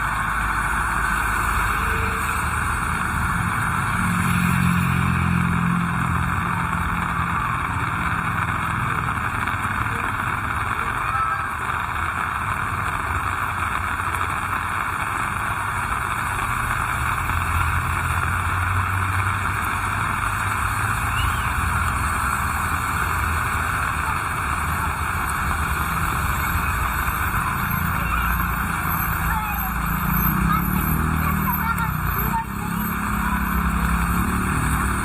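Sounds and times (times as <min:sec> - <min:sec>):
heavy rain falling: 0:00.0 - 0:35.0
road traffic rumble: 0:00.0 - 0:35.0.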